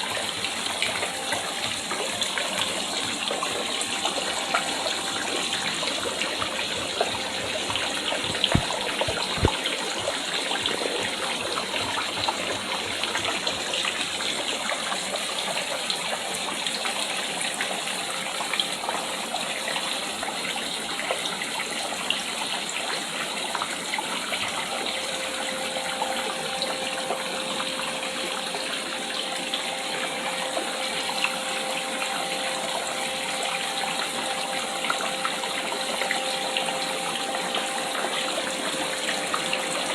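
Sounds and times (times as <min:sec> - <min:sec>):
water splashing into pond: 0:00.0 - 0:39.9.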